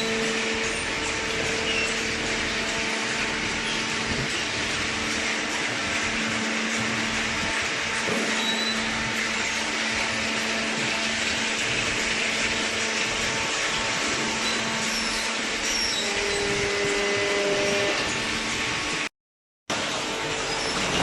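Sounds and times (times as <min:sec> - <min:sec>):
baler motor humming and whirring: 0:00.0 - 0:19.1.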